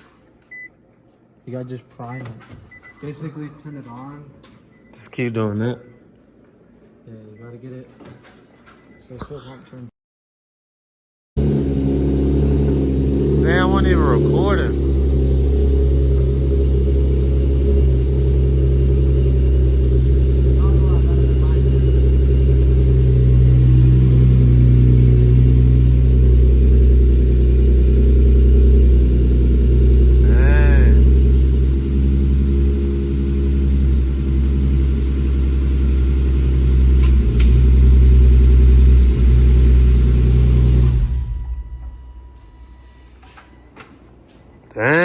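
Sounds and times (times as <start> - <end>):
car engine idling: 11.4 - 43.2.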